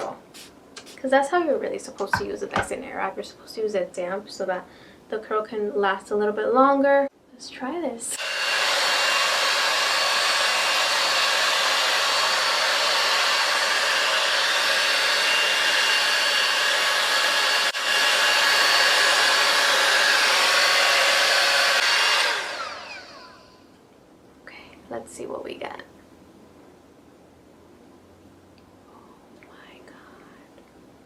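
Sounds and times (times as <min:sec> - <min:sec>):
hot-air brush blowing with motor whine: 0:08.1 - 0:23.7
motor winding down: 0:08.2 - 0:23.6.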